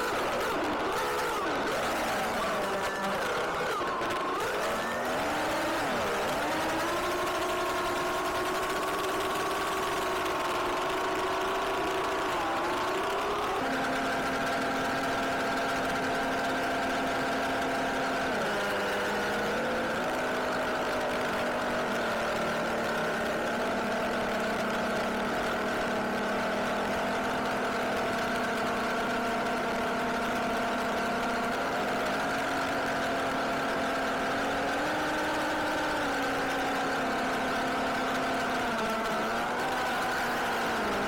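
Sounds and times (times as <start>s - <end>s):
car engine running at low revs: 0.0s - 41.0s.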